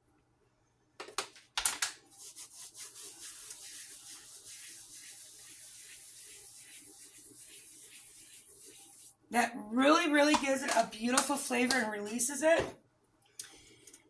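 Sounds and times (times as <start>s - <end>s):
dried leaves rubbed between palms: 2.1s - 9.3s.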